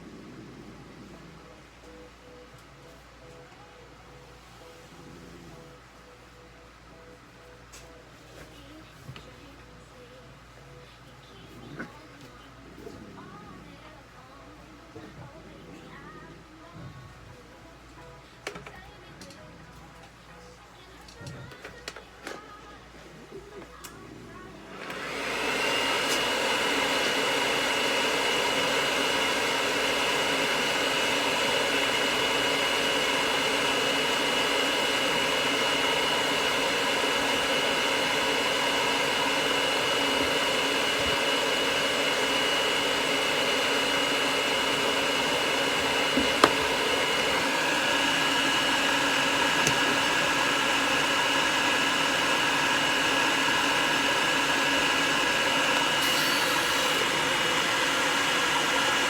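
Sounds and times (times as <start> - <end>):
hair dryer blowing: 24.6 - 59.0.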